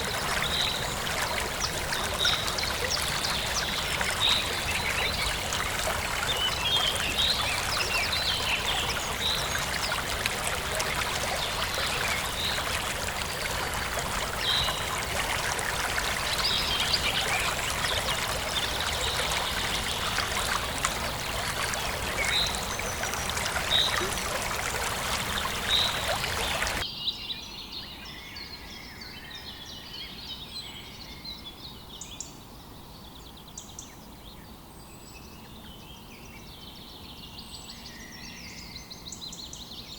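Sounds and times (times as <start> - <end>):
birds chirping: 0.0 - 26.8
running water: 0.0 - 26.8.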